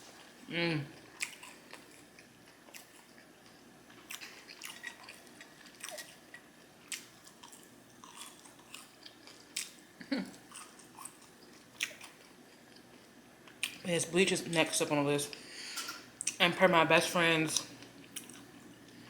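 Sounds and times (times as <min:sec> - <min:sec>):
person chewing food: 0:00.0 - 0:13.8, 0:17.8 - 0:19.0.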